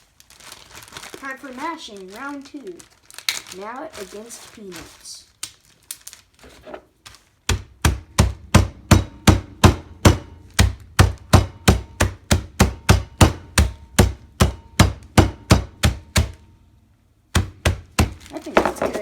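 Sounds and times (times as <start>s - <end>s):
pounding peanuts: 17.2s - 19.0s.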